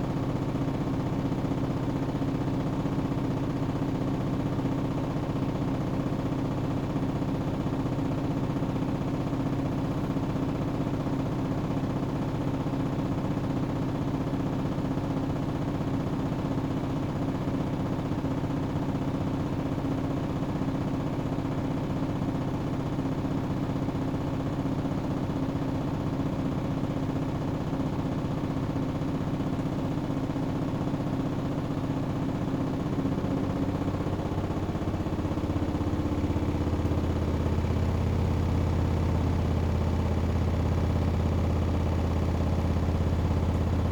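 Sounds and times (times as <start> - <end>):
washing machine spinning: 27.0 - 43.9.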